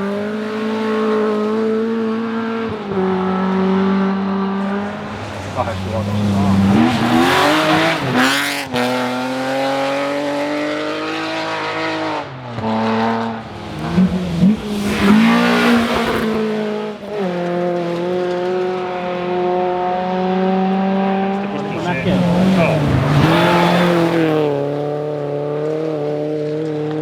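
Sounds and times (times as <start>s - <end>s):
rally car engine revving: 0.0s - 27.0s
loud rush of noise: 4.4s - 8.8s, 13.3s - 17.0s, 21.4s - 24.5s.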